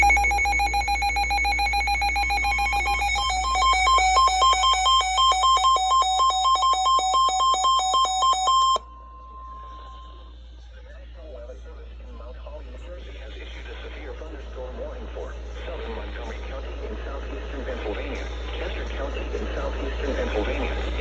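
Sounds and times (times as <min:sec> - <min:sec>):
steady warning alarm tone: 0:00.0 - 0:10.4
buzzy electronic alarm beeping: 0:00.0 - 0:10.5.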